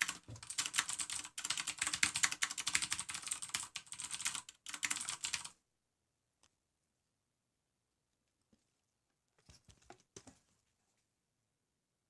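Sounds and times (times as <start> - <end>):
clicky mechanical keyboard typing: 0.0 - 5.6.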